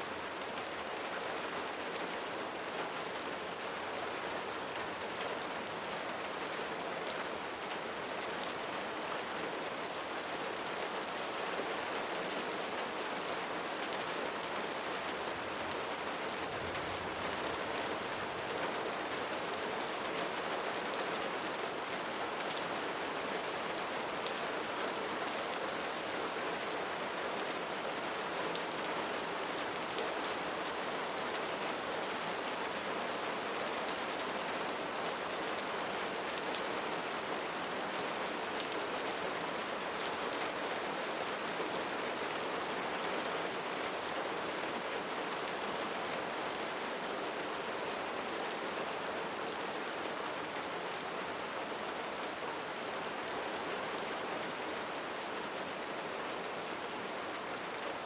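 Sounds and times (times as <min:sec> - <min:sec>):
rain falling on leaves: 0:00.0 - 0:58.0.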